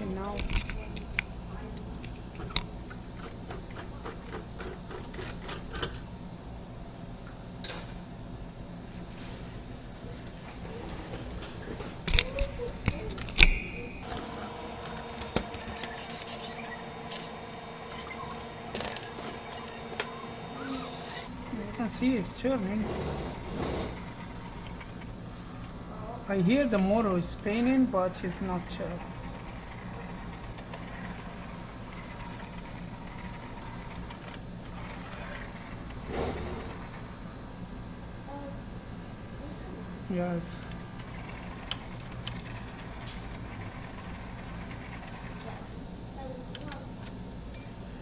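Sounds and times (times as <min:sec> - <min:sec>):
small motor whirring: 0:14.0 - 0:21.6, 0:22.6 - 0:37.6.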